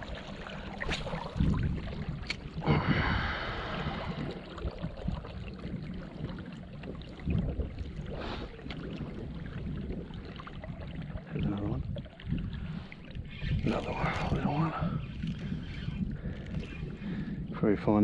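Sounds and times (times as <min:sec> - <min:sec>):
water against kayak hull: 0:00.0 - 0:17.4
wind rumble on microphone: 0:00.0 - 0:18.0
knocks and splashes: 0:00.8 - 0:02.4.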